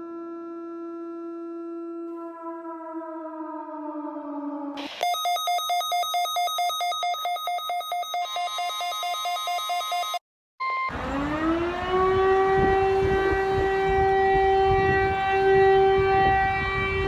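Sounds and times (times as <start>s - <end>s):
warning siren winding up: 0.0s - 17.0s
electronic alert tone: 4.8s - 10.0s
brief beep: 5.0s - 8.7s, 10.6s - 10.9s.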